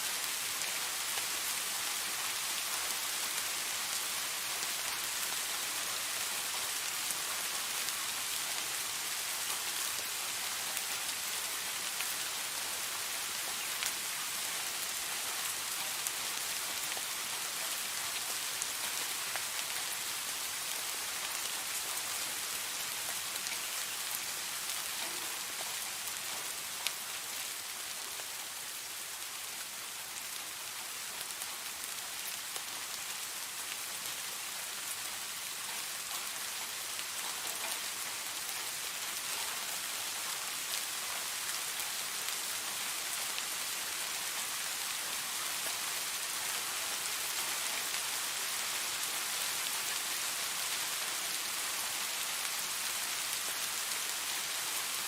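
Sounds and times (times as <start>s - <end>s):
steady rain falling: 0.0s - 55.0s.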